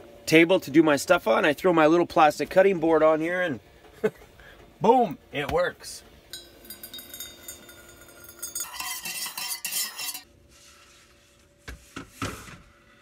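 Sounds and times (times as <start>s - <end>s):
metal utensil scraping dishes: 6.3s - 10.3s
ringing metal tones: 6.3s - 10.3s.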